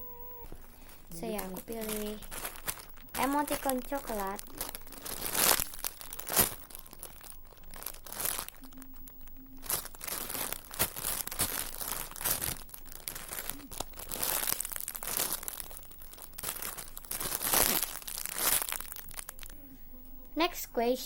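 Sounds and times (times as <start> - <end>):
plastic crinkling and rustling: 0.3 - 19.7.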